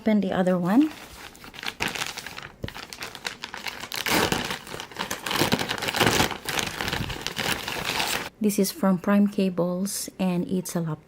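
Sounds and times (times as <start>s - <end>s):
packaging rustling and crinkling: 0.6s - 8.3s.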